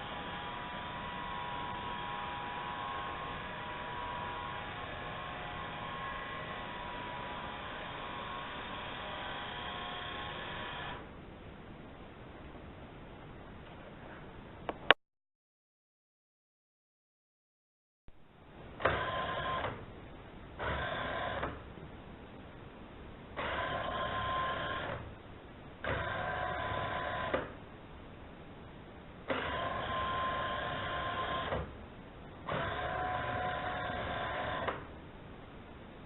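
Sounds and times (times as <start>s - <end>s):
robot vacuum motors whirring: 29.3s - 31.6s, 32.5s - 34.8s.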